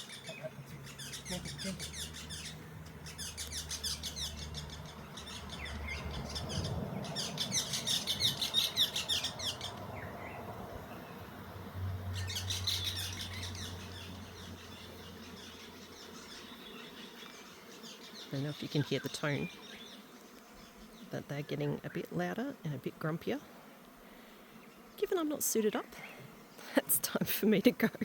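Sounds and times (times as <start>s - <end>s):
birds chirping: 0.0s - 28.0s
honeybee swarm humming: 0.0s - 28.0s.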